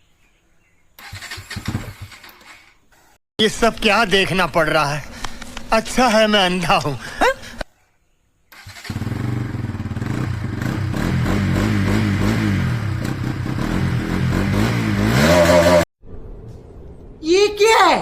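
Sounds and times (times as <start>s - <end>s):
engine revving: 8.5s - 15.9s.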